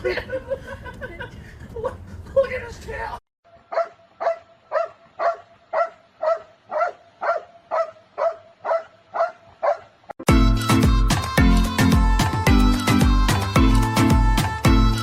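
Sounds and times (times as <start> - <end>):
dog barking: 3.7 - 9.9
loud music: 10.3 - 15.0.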